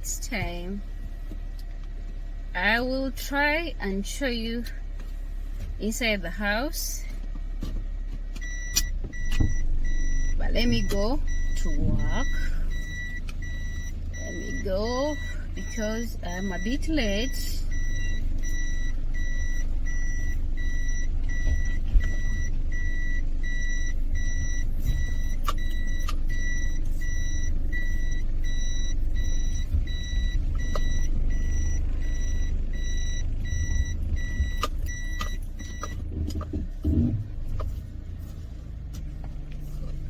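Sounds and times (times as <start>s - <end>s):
car engine rumbling: 0.0s - 40.0s
electronic warning beeps: 8.4s - 37.6s.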